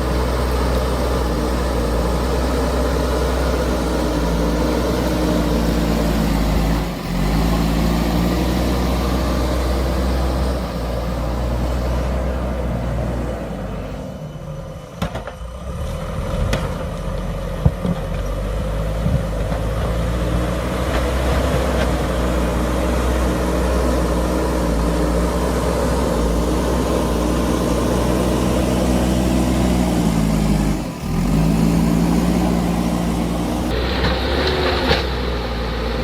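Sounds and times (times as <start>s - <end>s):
diesel engine working: 0.0s - 36.0s.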